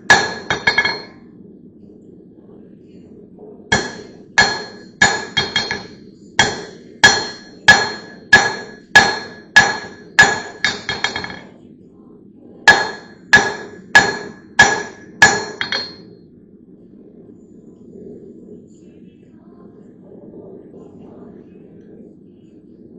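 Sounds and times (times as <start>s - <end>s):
hammer striking steel: 0.0s - 1.1s, 3.7s - 11.5s, 12.7s - 16.0s.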